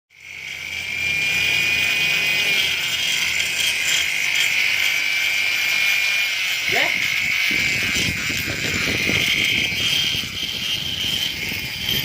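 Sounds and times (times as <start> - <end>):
rotary grinder whining: 0.1 - 12.0.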